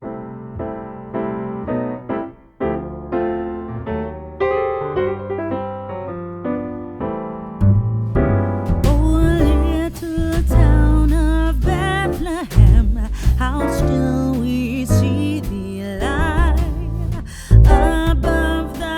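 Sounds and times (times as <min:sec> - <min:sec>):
electric piano chords: 0:00.0 - 0:18.9
deep bass: 0:07.4 - 0:18.9.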